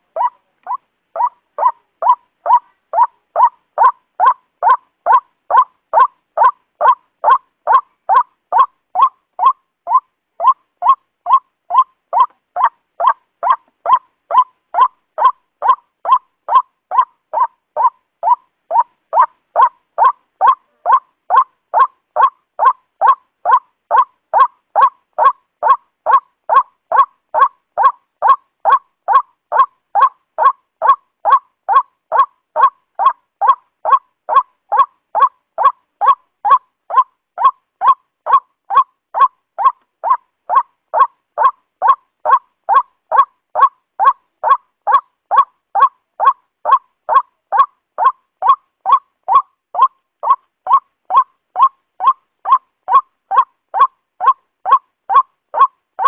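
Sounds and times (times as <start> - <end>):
waterhen calling: 0.0 - 55.7.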